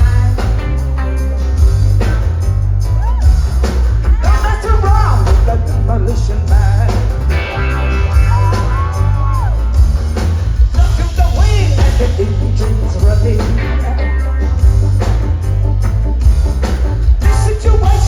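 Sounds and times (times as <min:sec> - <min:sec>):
live band with bass and drums: 0:00.0 - 0:18.0
woman singing: 0:17.2 - 0:18.0.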